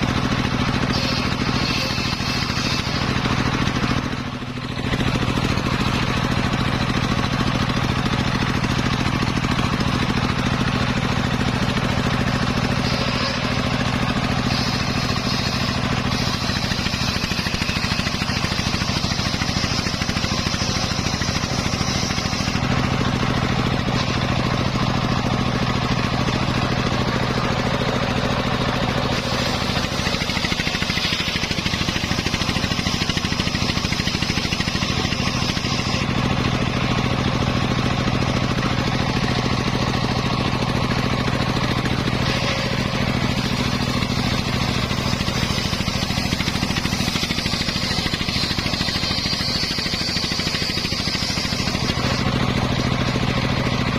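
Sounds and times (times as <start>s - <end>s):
circular saw engine running: 0.0s - 53.9s
saw blade cutting wood: 0.0s - 53.9s.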